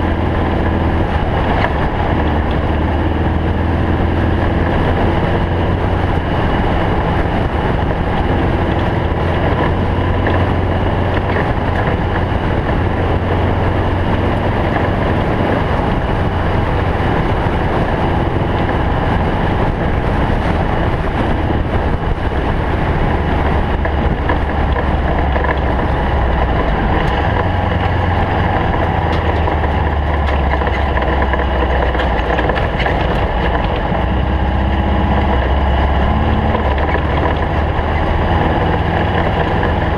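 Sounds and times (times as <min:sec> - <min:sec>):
dirt road noise: 0:00.0 - 0:39.9
race car engine running hard: 0:00.0 - 0:39.9
wind noise: 0:00.0 - 0:39.9.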